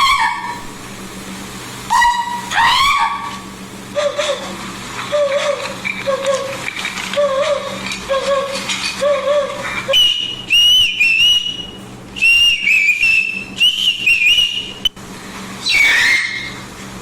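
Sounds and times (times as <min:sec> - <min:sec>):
man imitating bird calls: 0:04.0 - 0:06.6
whistled warbling notes: 0:07.2 - 0:14.9, 0:15.6 - 0:16.6.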